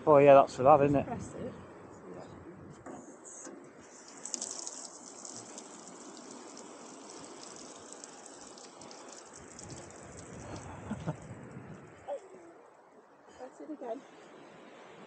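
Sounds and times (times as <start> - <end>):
shower water spraying on ground: 3.8 - 12.1.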